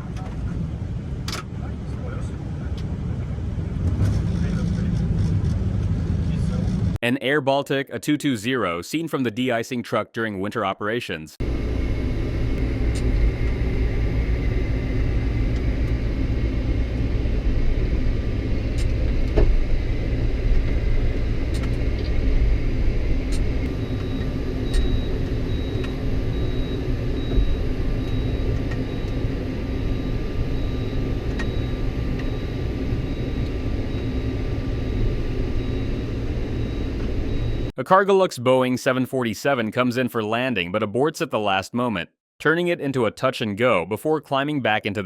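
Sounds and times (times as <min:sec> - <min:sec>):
truck engine rumbling: 0:11.4 - 0:37.7
thin steady whines: 0:11.4 - 0:37.8.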